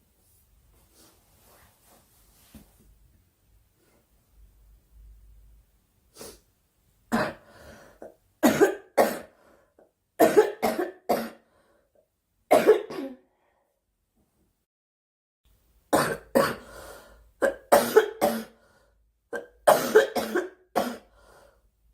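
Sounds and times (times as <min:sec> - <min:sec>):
girl coughing: 0:07.1 - 0:07.4, 0:08.4 - 0:09.3, 0:10.2 - 0:11.4, 0:12.5 - 0:13.3, 0:16.0 - 0:16.7, 0:17.4 - 0:18.6, 0:19.4 - 0:21.1.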